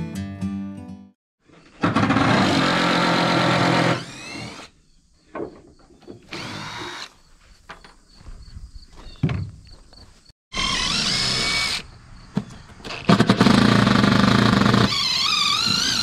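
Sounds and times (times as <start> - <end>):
power drill running: 2.0 - 4.7, 6.3 - 7.1, 10.5 - 11.8, 13.4 - 16.0.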